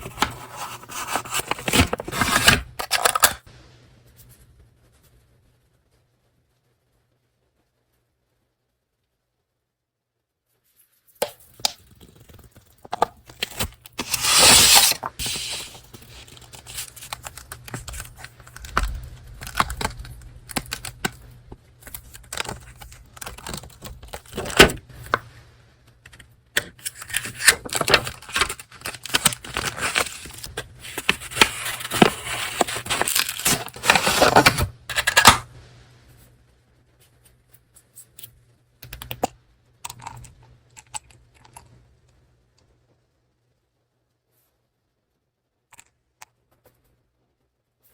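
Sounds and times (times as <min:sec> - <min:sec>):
paper rustling and crinkling: 0:00.0 - 0:03.4, 0:11.8 - 0:21.2, 0:21.8 - 0:25.2, 0:26.8 - 0:35.4.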